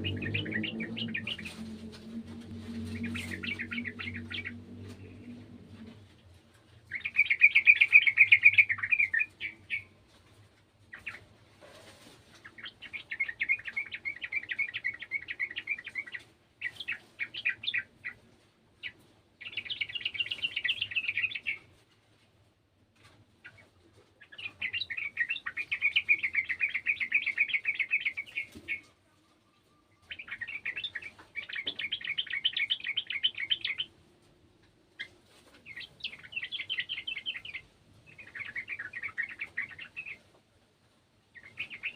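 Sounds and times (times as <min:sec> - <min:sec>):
bird chattering song: 0:00.0 - 0:05.6, 0:06.9 - 0:09.9, 0:12.4 - 0:18.2, 0:18.8 - 0:21.6, 0:24.2 - 0:28.8, 0:29.9 - 0:33.9, 0:35.0 - 0:40.2, 0:41.4 - 0:41.9.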